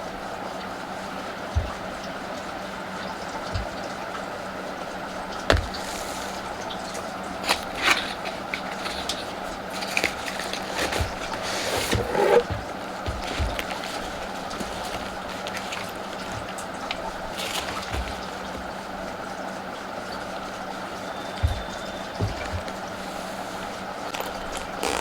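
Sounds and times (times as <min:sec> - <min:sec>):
steady hiss: 0:04.6 - 0:25.0
crinkly packaging rustling: 0:05.2 - 0:25.0
sharp knocks on packaging: 0:05.5 - 0:06.4, 0:21.4 - 0:22.8.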